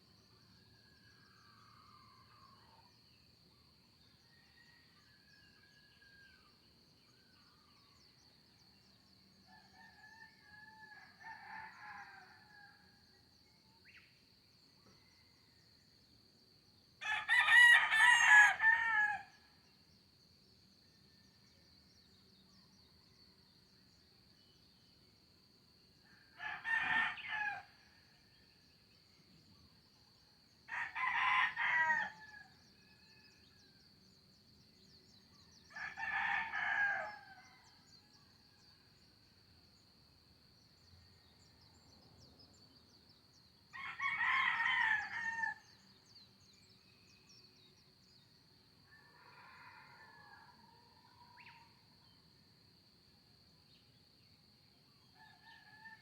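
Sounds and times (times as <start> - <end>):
rooster crowing: 17.0 - 19.3, 26.4 - 27.7, 30.7 - 32.5, 35.7 - 37.5, 43.8 - 45.6.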